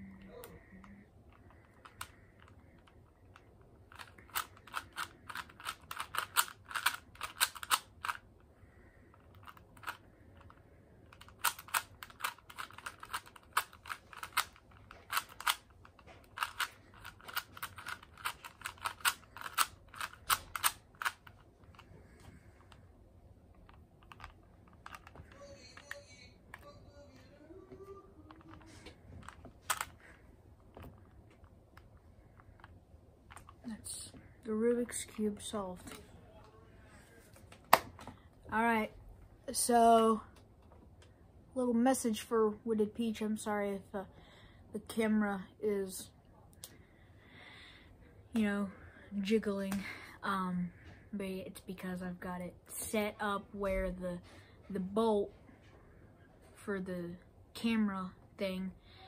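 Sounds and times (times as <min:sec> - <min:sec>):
puzzle cube layers clicking: 0:00.8 - 0:08.3, 0:09.2 - 0:21.9.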